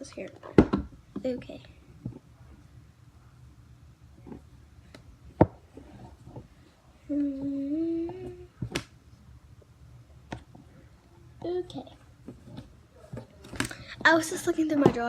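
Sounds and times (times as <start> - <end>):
girl humming: 7.1 - 8.6.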